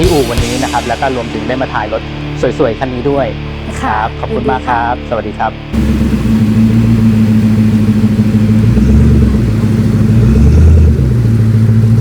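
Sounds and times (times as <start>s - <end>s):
car engine revving: 5.7s - 12.0s.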